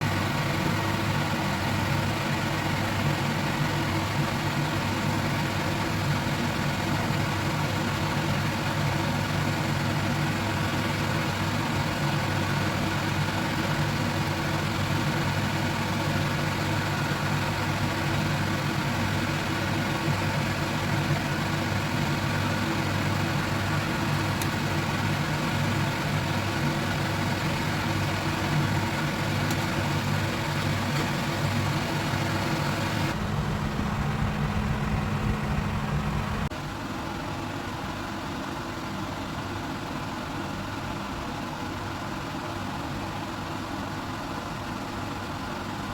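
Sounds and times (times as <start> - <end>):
motor humming: 10.0 - 36.5.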